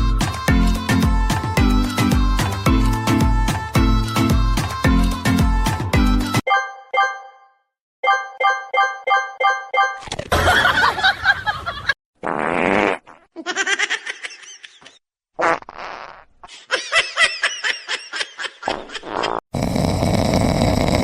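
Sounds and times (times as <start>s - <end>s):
fart-like buzzing noise: 12.2s - 13.3s, 15.4s - 16.3s, 19.0s - 21.0s.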